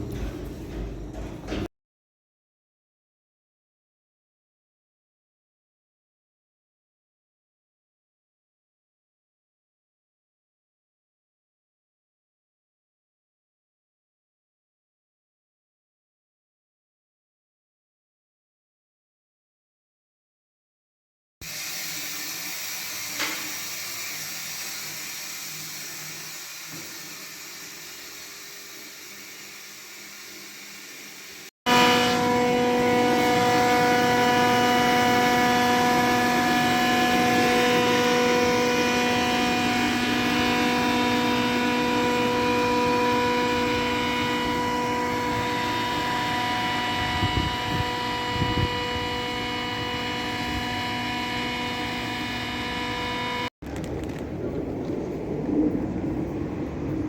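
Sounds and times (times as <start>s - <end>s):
mechanical drone with hum: 27.3s - 57.0s.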